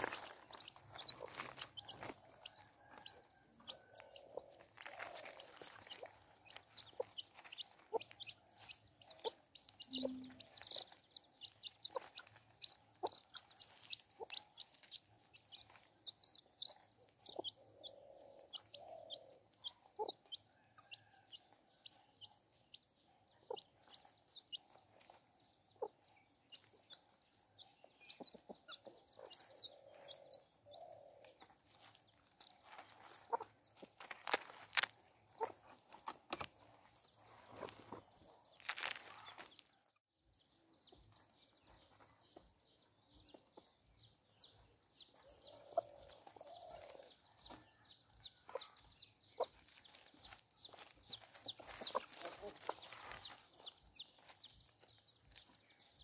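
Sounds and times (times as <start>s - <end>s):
hen clucking: 0.0s - 20.4s, 32.8s - 35.7s, 49.4s - 53.8s
chicks peeping: 0.0s - 39.8s, 40.7s - 56.0s.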